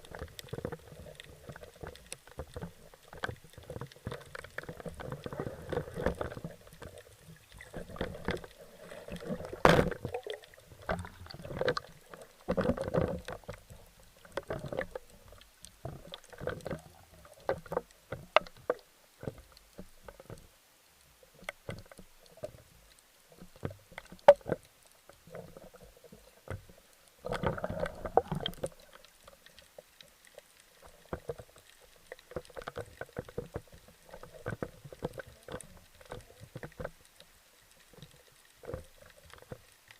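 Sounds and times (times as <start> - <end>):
muffled water sloshing: 0.0 - 19.4.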